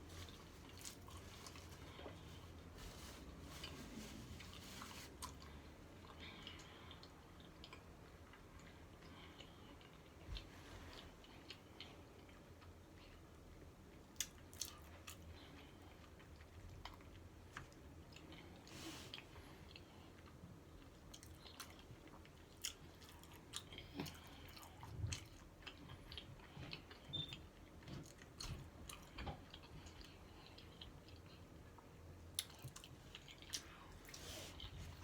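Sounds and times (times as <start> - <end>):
chewing food close-up: 13.9 - 35.0.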